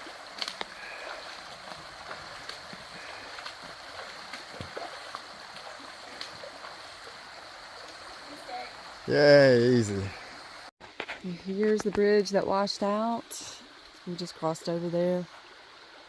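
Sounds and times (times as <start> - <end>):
splashes from wading: 0.0 - 9.1.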